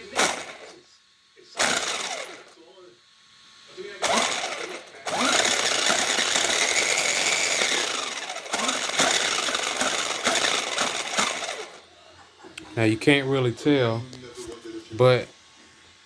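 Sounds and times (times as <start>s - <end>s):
electric motor rattling and grinding: 0.0s - 2.7s, 3.6s - 11.9s.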